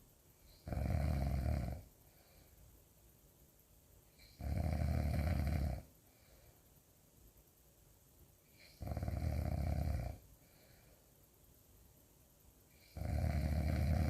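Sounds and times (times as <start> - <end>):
loud rattling snores: 0.5 - 1.9, 4.2 - 5.9, 8.6 - 10.2, 12.8 - 14.0.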